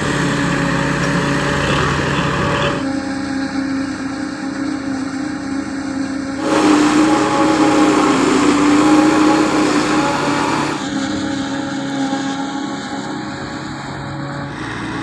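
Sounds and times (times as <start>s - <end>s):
harvester engine hum: 0.0s - 5.6s, 6.4s - 11.3s
rushing noise: 6.4s - 10.9s.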